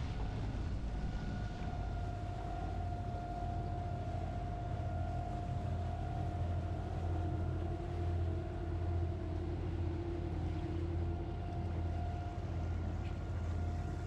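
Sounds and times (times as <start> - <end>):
boat engine droning: 0.0 - 14.0.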